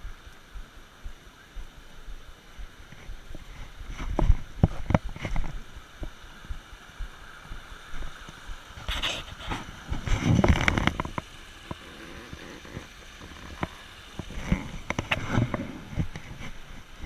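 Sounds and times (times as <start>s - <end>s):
rustling: 8.8s - 17.0s.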